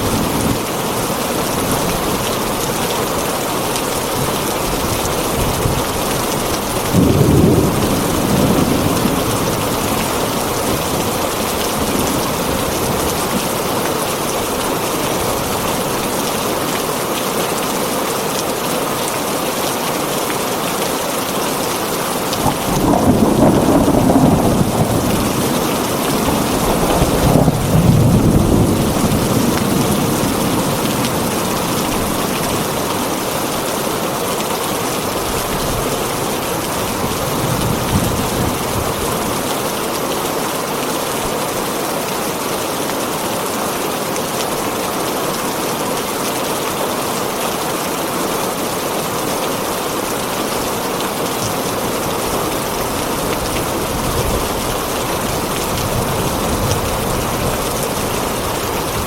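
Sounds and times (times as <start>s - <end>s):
heavy rain on a tin roof: 0.0s - 59.0s
thunder rumbling: 4.7s - 13.3s, 22.3s - 33.7s.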